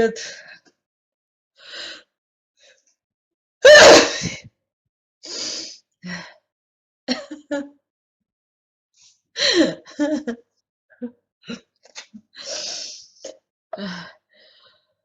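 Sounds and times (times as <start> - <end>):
breathing: 1.6 - 2.9, 5.3 - 6.4, 12.4 - 13.2, 13.8 - 14.9
person sneezing: 3.7 - 4.4.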